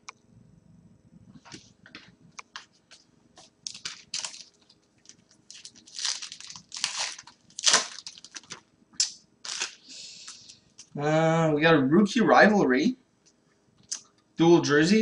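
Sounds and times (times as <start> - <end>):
wrappers crinkling: 2.9 - 8.7, 9.4 - 9.9.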